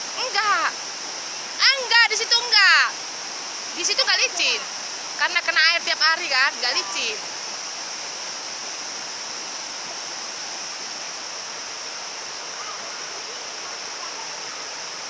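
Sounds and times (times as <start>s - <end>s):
waterfall rushing onto rocks: 0.0s - 15.0s.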